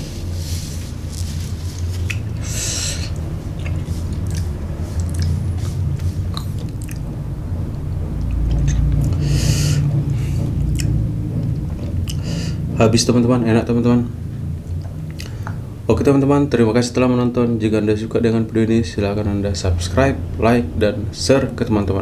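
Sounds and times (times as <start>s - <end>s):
low hum: 0.0s - 22.0s
person chewing food: 1.0s - 7.2s, 10.5s - 12.2s, 14.7s - 15.6s
wet mouth clicks: 1.8s - 7.1s, 10.7s - 11.0s, 12.0s - 12.2s, 14.7s - 15.6s.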